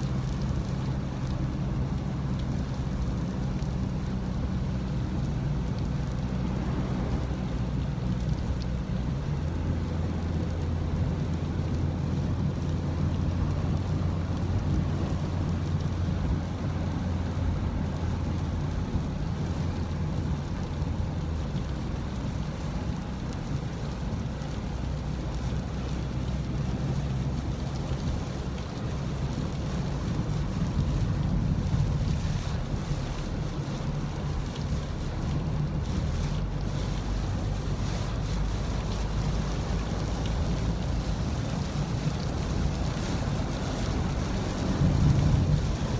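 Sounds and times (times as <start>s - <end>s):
rain rushing: 0.0s - 45.9s
wind buffeting microphone: 27.3s - 45.9s.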